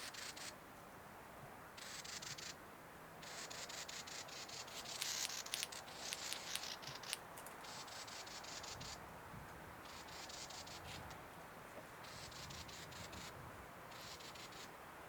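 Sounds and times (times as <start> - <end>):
bird clicking rattles: 4.7 - 7.8.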